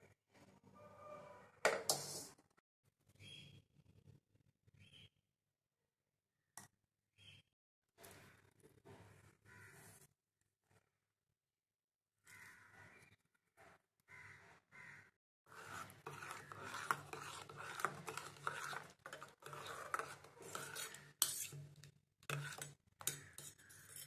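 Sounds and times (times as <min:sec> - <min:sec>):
metal utensils scraping a pot: 0:15.5 - 0:24.0.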